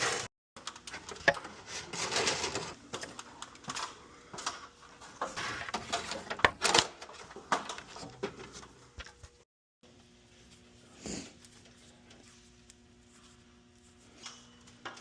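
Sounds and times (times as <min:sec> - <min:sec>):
clicking and rustling of cable work: 0:00.6 - 0:09.5, 0:11.4 - 0:15.0.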